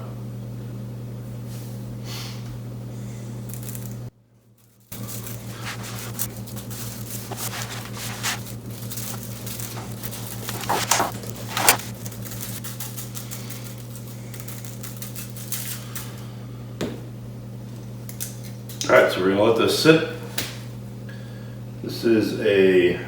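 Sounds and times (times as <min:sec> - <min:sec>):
soft scratchy rubbing strokes: 0:04.6 - 0:13.0.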